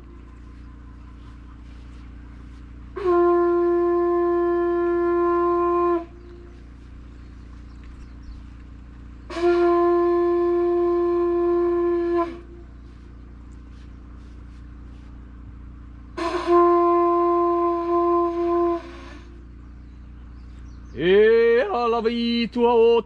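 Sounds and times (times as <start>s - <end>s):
conch shell trumpet blasts: 2.9s - 6.8s, 9.3s - 13.0s, 16.2s - 19.4s.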